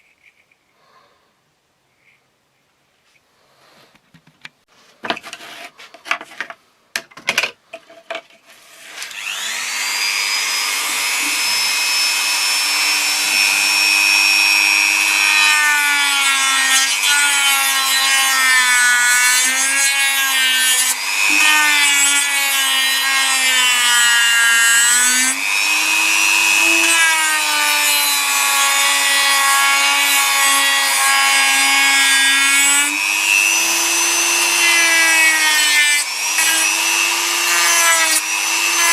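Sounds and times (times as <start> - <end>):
power tool grinding: 8.4 - 38.9.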